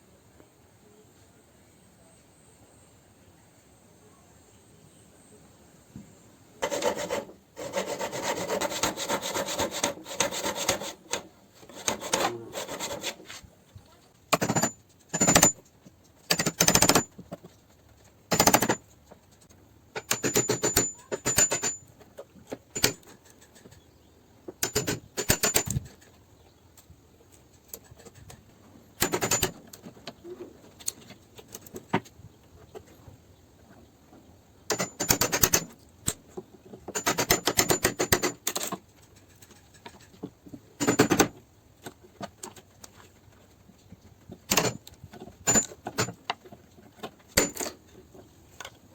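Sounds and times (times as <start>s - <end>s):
hand tool rasping wood: 6.6s - 13.4s
hand tool scraping wood: 6.6s - 13.5s.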